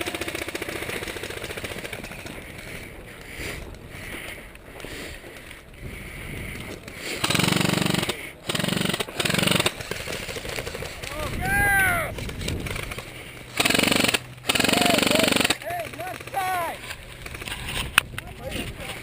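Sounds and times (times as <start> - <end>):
airsoft gun rapid firing: 0.0 - 2.8, 7.1 - 11.4, 12.1 - 17.5.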